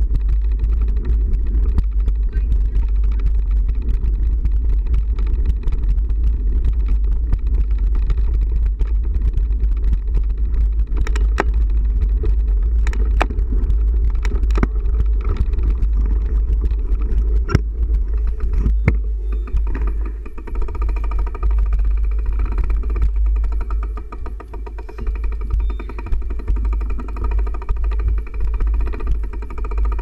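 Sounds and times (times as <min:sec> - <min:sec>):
vehicle engine rumbling: 0:00.0 - 0:30.0
sharp ticks and taps: 0:06.2 - 0:30.0.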